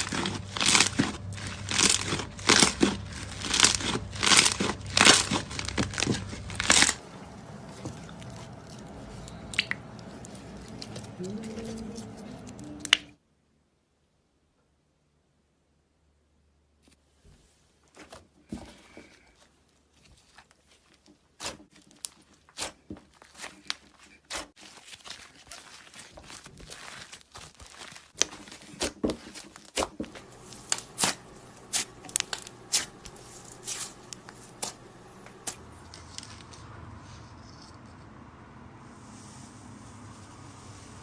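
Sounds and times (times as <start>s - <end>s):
slime squished by hand: 7.6s - 13.1s, 19.4s - 35.8s
air pockets popping in slime: 21.4s - 34.8s.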